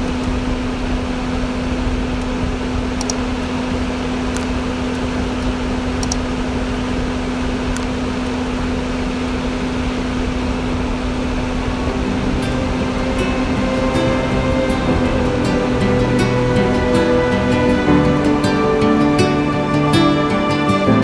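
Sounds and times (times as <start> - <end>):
faint clicks: 2.2 - 6.4
diesel engine running: 10.6 - 21.0.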